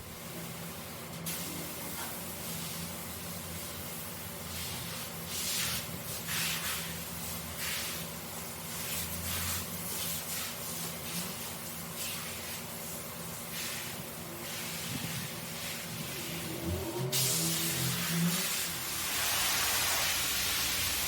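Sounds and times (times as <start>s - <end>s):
brush scrubbing wet carpet: 4.5s - 12.7s.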